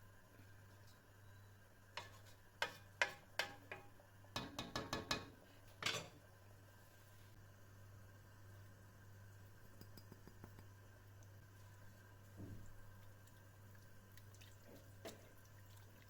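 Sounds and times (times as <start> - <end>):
utensil knocking on cookware: 2.0 - 5.4.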